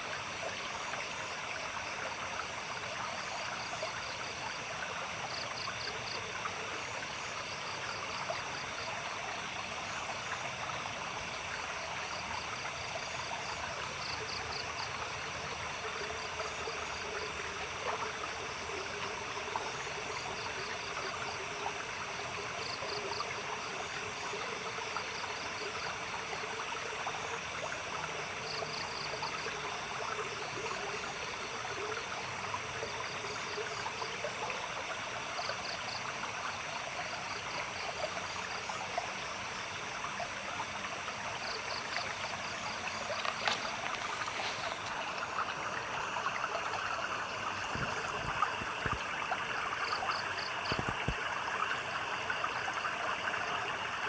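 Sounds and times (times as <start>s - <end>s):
stream babbling: 35.0s - 54.0s.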